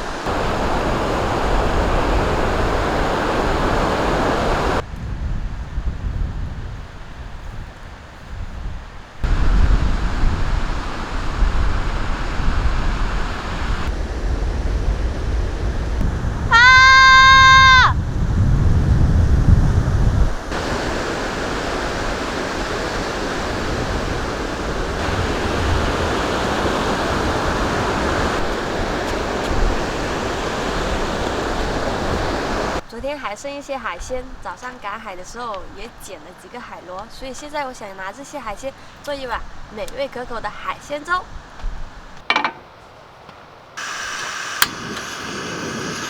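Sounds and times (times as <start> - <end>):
sea waves washing on shore: 0.0 - 4.8, 9.1 - 16.7, 19.6 - 41.4
wind rumbling on microphone: 0.0 - 33.2, 38.6 - 42.2, 44.7 - 46.0.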